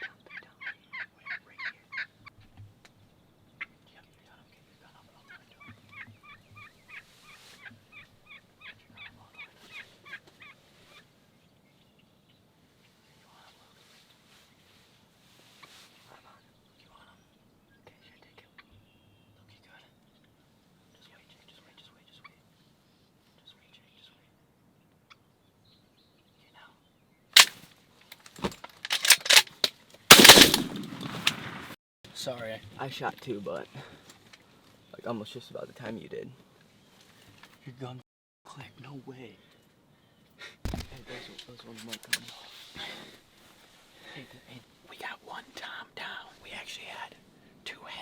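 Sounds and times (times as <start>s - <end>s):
knocks and rustling: 28.2s - 31.4s, 40.7s - 42.0s
shotgun shots: 28.4s - 31.8s.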